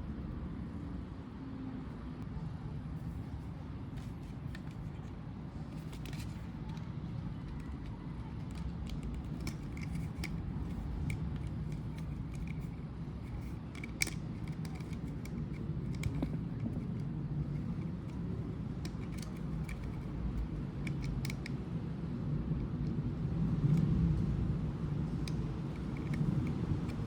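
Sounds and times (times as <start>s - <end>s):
steady low hum: 0.0s - 27.0s
packaging clicks and scrapes: 4.0s - 21.5s, 25.1s - 27.0s.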